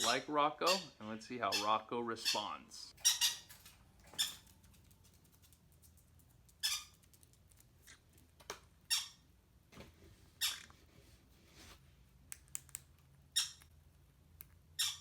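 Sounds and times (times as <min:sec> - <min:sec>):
parrot chirping and squawking: 0:00.0 - 0:04.6, 0:06.6 - 0:07.2, 0:08.8 - 0:09.3, 0:10.3 - 0:10.9, 0:13.2 - 0:13.7, 0:14.6 - 0:15.0.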